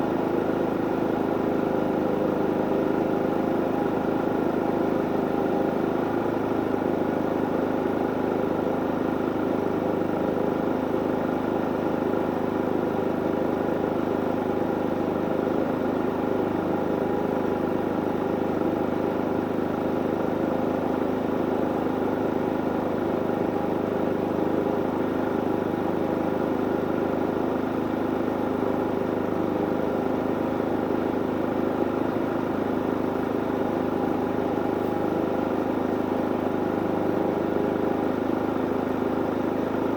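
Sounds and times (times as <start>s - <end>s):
generator engine humming: 32.0s - 39.9s.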